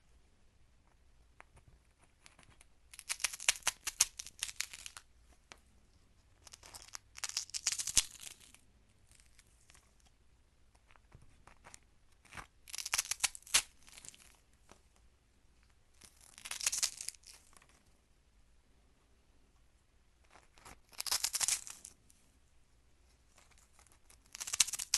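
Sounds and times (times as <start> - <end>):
sharp crackling and crunching: 23.6 - 24.9.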